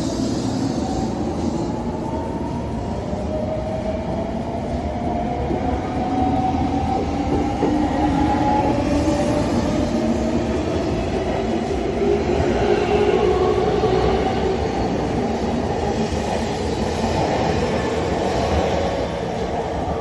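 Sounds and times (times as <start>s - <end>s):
train wheels rumbling on rails: 0.0s - 20.0s.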